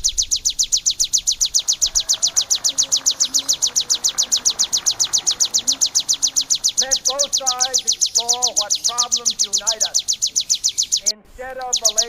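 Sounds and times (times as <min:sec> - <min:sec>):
bird trilling high chips: 0:00.0 - 0:12.0.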